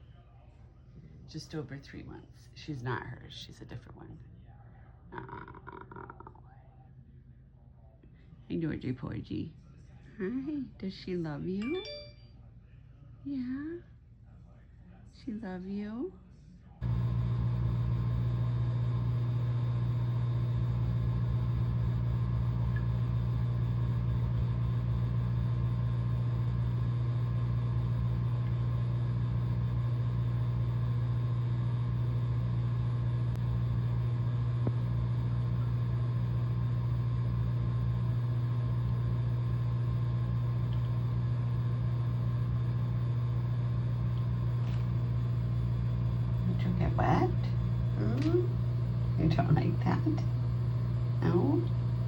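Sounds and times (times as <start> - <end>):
low mechanical hum: 0.0 - 52.0
faint high steady tones: 11.6 - 12.5.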